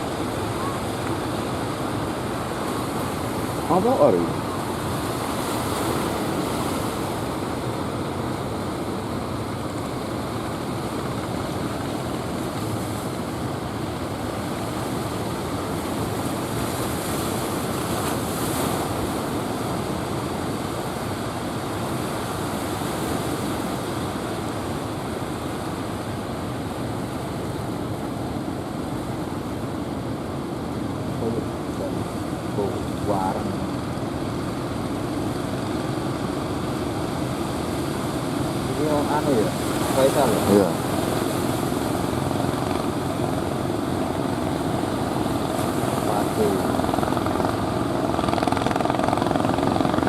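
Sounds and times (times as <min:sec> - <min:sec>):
ocean surf washing on beach: 0:00.0 - 0:50.0
wind on microphone: 0:38.0 - 0:50.0.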